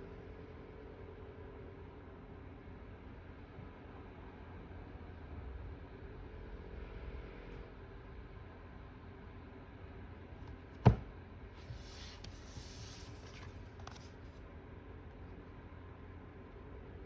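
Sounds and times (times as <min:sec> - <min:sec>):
cards rustling on a table: 0:11.6 - 0:14.4.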